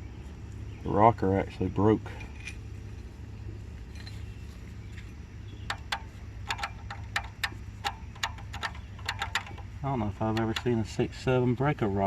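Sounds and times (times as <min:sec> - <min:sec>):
steady low hum: 0:00.0 - 0:12.0
metallic clicks of engine parts: 0:02.0 - 0:02.7, 0:03.8 - 0:11.7.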